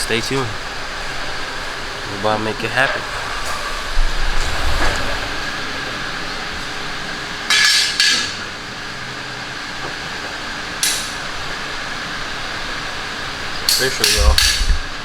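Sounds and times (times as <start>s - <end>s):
workshop background hum: 0.0s - 15.0s.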